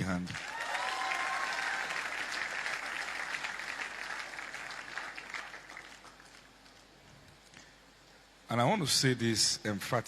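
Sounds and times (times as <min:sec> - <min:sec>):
congregation applauding: 0:00.0 - 0:07.0.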